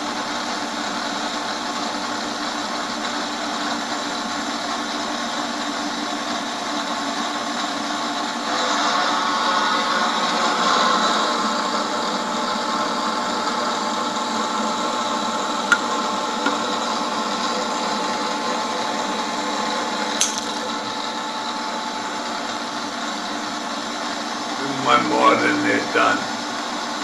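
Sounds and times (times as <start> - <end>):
sharp click: 20.2 - 20.7.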